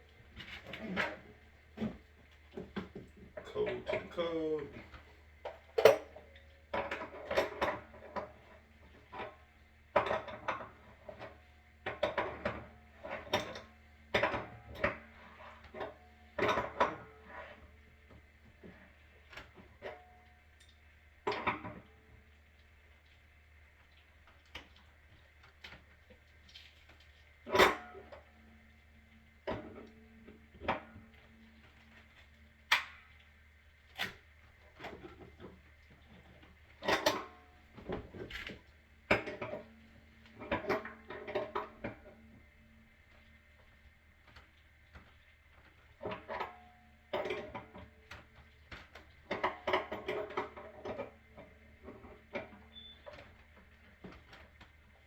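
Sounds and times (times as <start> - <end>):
metallic clanks of tools and pipes: 0.4 - 17.7, 18.6 - 21.9, 27.4 - 28.4, 34.0 - 39.7, 40.3 - 42.2, 45.0 - 54.6.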